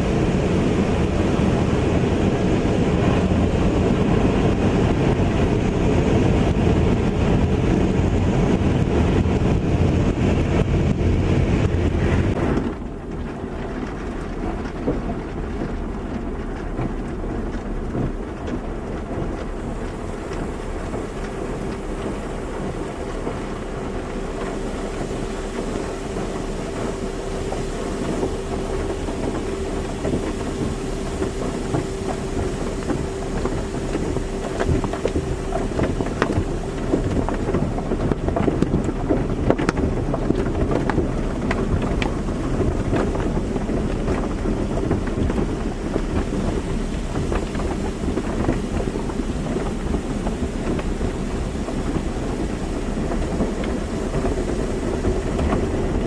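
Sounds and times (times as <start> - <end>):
machine hum: 0.0 - 56.0
water spray and machinery: 0.0 - 56.0
water spattering: 11.8 - 56.0.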